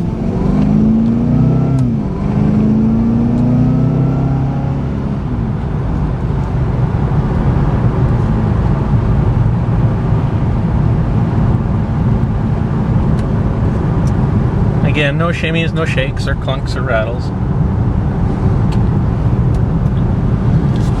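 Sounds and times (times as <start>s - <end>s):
car engine accelerating: 0.0s - 21.0s
road and tyre noise: 0.0s - 21.0s.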